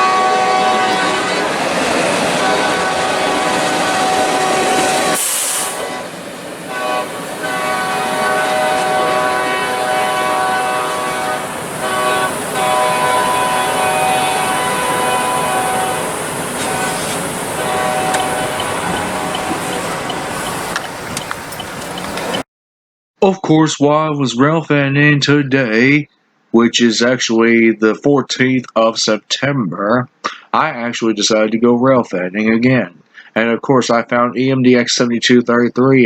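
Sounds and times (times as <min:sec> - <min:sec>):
locomotive air horn blasts: 0:00.0 - 0:22.4
passing train rumbling and clicking: 0:00.0 - 0:22.4.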